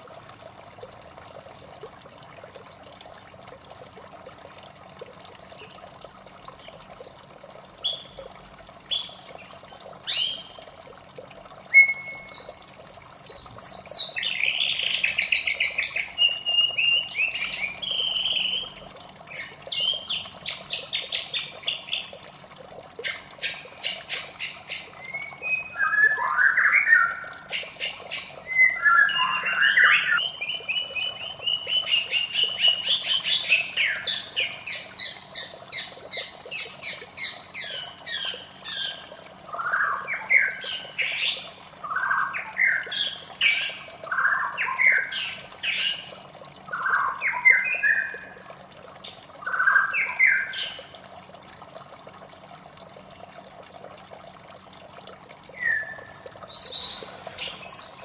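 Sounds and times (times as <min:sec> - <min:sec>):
running water: 0:00.0 - 0:58.0
bird singing whistled phrases: 0:11.7 - 0:12.6, 0:13.2 - 0:18.7, 0:25.0 - 0:27.3, 0:28.4 - 0:34.2, 0:55.5 - 0:58.0.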